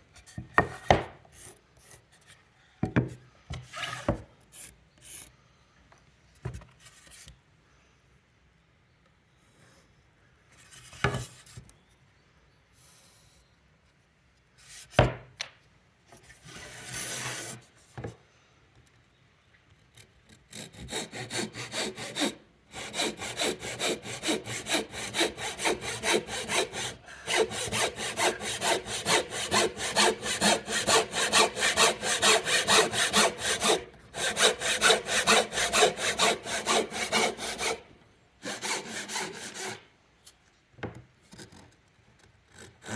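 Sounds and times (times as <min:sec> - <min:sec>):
hand saw cutting wood: 0:20.3 - 0:39.9.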